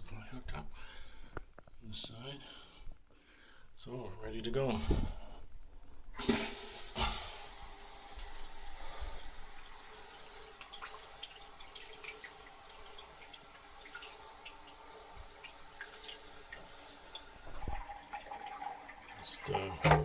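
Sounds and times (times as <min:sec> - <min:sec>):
toilet refilling with water: 0:06.2 - 0:20.0.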